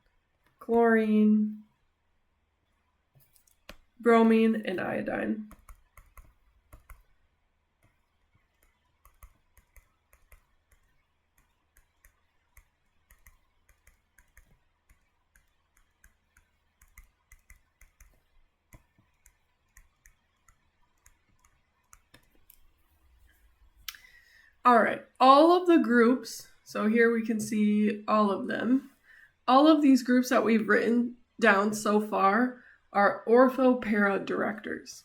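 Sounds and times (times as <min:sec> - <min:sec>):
stylus tapping on tablet screen: 0:03.5 - 0:03.9, 0:05.5 - 0:07.2, 0:07.8 - 0:22.8.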